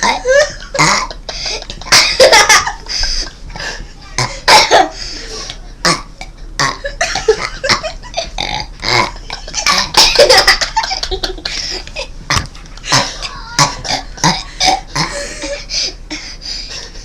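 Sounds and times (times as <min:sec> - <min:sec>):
laughter: 0:00.2 - 0:03.4, 0:09.2 - 0:12.1
child burping: 0:05.8 - 0:07.8, 0:08.4 - 0:10.2, 0:12.3 - 0:15.3.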